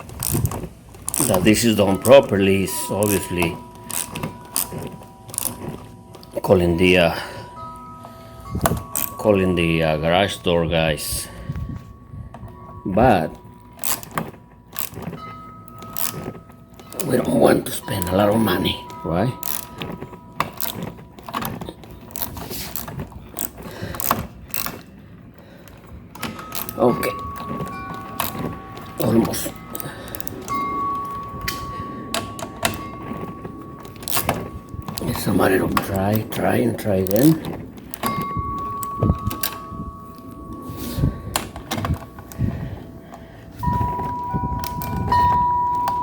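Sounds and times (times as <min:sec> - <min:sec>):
metallic clicks and scrapes: 0:00.0 - 0:09.3, 0:13.6 - 0:46.0
power drill whining: 0:00.0 - 0:46.0
knocks and clicks on lock hardware: 0:18.9 - 0:24.9, 0:41.3 - 0:42.5.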